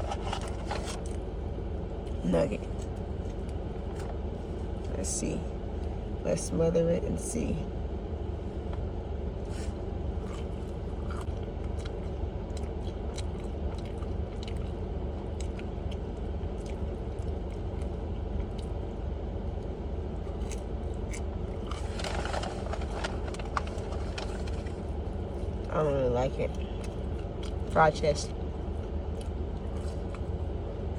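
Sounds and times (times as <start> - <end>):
low rumble: 0.0 - 30.9
person chewing: 9.4 - 18.9, 19.6 - 25.7, 26.5 - 27.8, 28.4 - 30.4.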